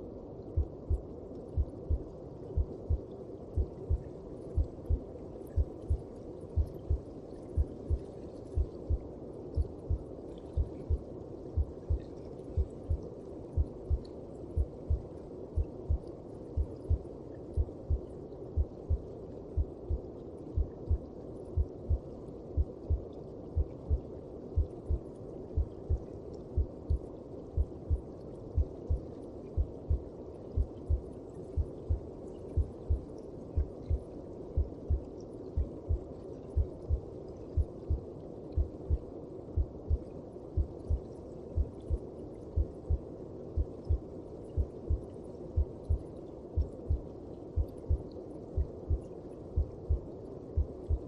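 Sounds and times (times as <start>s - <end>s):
heartbeat thumps: 0.6s - 1.0s, 1.6s - 2.0s, 2.6s - 3.0s, 3.6s - 6.0s, 6.6s - 7.0s, 7.6s - 8.0s, 8.6s - 9.0s, 9.6s - 10.0s, 10.6s - 11.0s, 11.6s - 12.0s, 13.6s - 14.0s, 14.6s - 15.0s, 16.6s - 17.0s, 17.6s - 18.0s, 18.6s - 19.0s, 20.6s - 21.0s, 24.6s - 25.0s, 25.6s - 26.0s, 27.6s - 28.0s, 29.6s - 30.0s, 30.6s - 31.0s, 32.6s - 33.0s, 34.6s - 35.0s, 35.6s - 36.0s, 36.6s - 37.0s, 39.6s - 40.0s, 40.6s - 41.0s, 41.6s - 42.0s, 42.6s - 43.0s, 44.6s - 45.0s, 45.6s - 46.0s, 46.6s - 47.0s, 47.6s - 48.0s, 48.6s - 50.0s, 50.6s - 51.0s
heartbeat: 0.6s - 9.0s, 9.6s - 13.0s, 13.6s - 18.0s, 18.6s - 20.0s, 20.6s - 22.0s, 22.6s - 24.0s, 24.6s - 25.0s, 25.6s - 27.0s, 27.6s - 28.0s, 28.6s - 29.0s, 29.6s - 32.0s, 32.6s - 51.0s.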